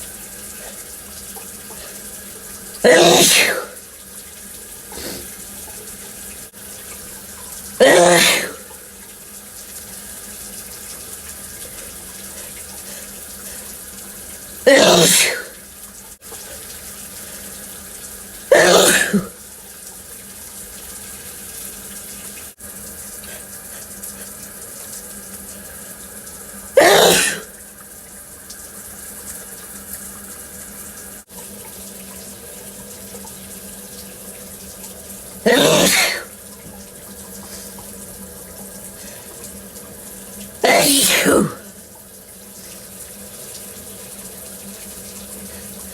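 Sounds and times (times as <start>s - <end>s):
person sneezing loudly: 2.8s - 3.8s, 7.8s - 8.7s, 14.7s - 15.6s, 18.5s - 19.4s, 26.8s - 27.5s, 35.4s - 36.3s, 40.6s - 41.7s.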